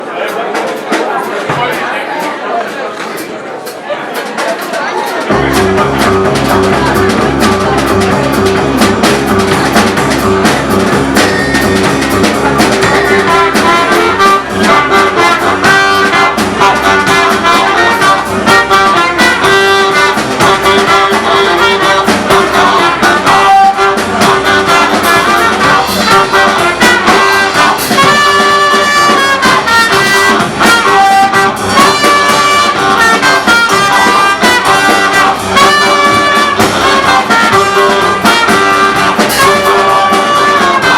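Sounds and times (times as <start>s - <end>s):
live band playing: 0.0s - 40.9s
brass lead line: 5.1s - 40.9s.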